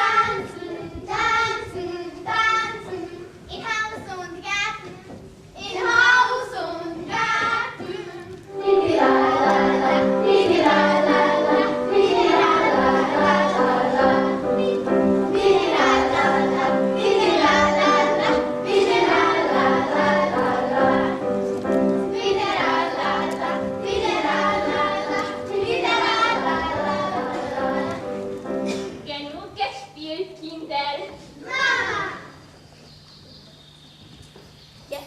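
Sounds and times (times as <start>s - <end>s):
children singing: 0.0s - 3.3s, 5.6s - 28.8s
instrumental accompaniment: 6.9s - 29.1s.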